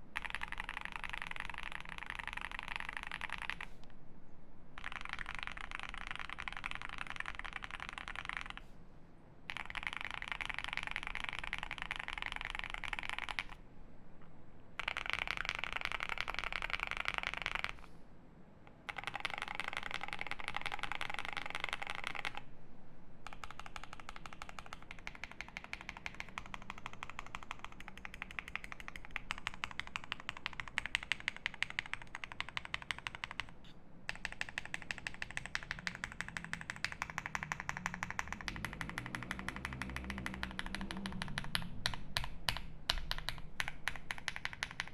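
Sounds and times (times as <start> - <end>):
fast typing on mechanical keyboard: 0.2 - 3.7, 4.8 - 8.7, 9.5 - 13.6, 14.8 - 17.8, 18.9 - 22.4, 23.2 - 44.9.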